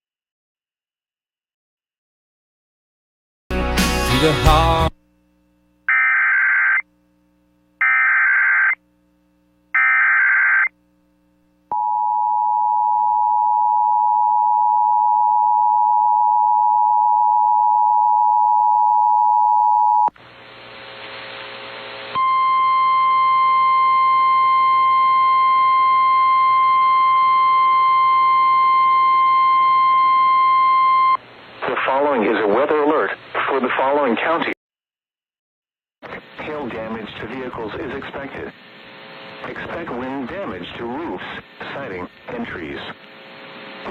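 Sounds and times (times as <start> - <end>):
screeching data bursts: 5.9 - 6.8, 7.8 - 8.8, 9.8 - 10.7
radio hiss: 20.2 - 22.2, 31.5 - 34.6, 36.0 - 43.9.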